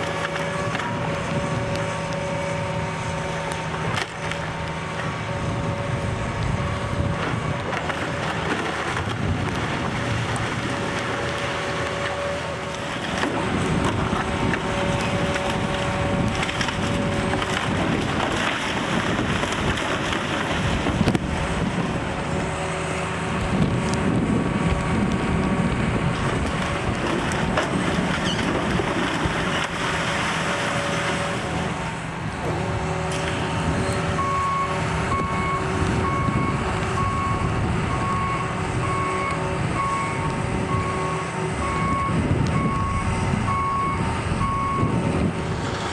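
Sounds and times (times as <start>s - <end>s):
heavy demolition machinery running: 0.0s - 45.9s
wood crushing and splintering: 3.3s - 5.1s, 7.0s - 22.6s, 23.3s - 34.0s
reversing alarm beeping: 34.1s - 45.1s.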